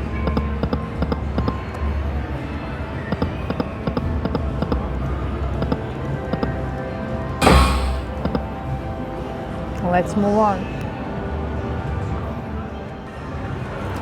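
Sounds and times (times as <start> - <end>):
sharp clicks: 3.1 - 4.8.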